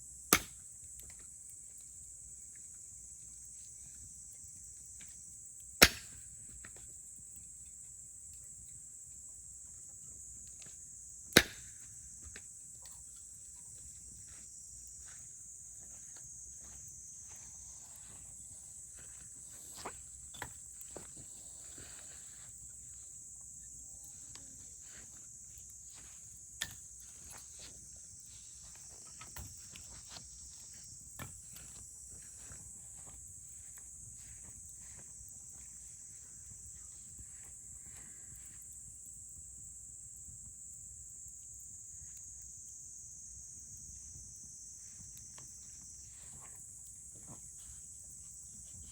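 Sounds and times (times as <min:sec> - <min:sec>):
high-pitched hiss: 0:00.0 - 0:48.9
loud sharp pops: 0:00.3 - 0:00.6, 0:05.8 - 0:06.2, 0:11.3 - 0:11.7.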